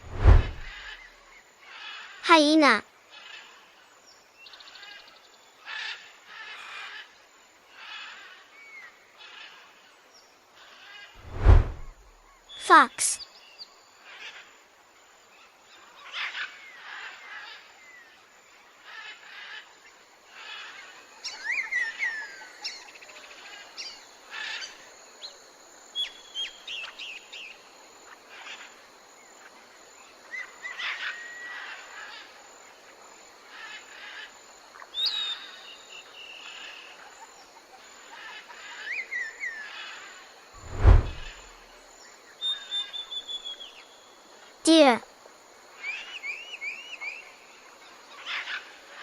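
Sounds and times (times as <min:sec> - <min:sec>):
faint outdoor hiss: 0:02.3 - 0:04.5, 0:11.3 - 0:14.1, 0:40.6 - 0:42.0, 0:43.4 - 0:49.0.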